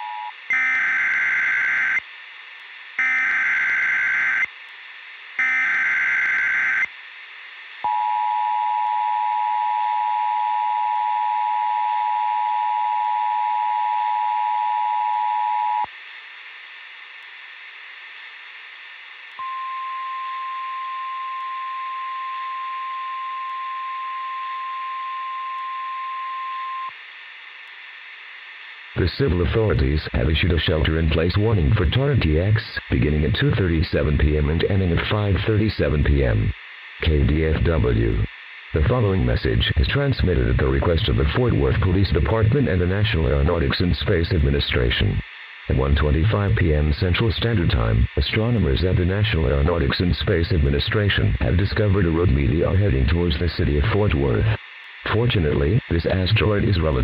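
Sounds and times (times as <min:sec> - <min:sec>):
buzzing digital header bursts: 0:03.0 - 0:04.5
two-tone attention signal: 0:19.4 - 0:26.9.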